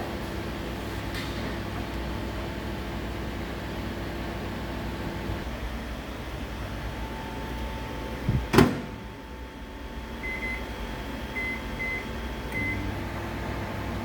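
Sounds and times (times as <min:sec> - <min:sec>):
microwave oven humming: 0:00.0 - 0:14.0
microwave door click: 0:08.5 - 0:09.0
keypad beeps: 0:10.2 - 0:10.6, 0:11.4 - 0:12.8.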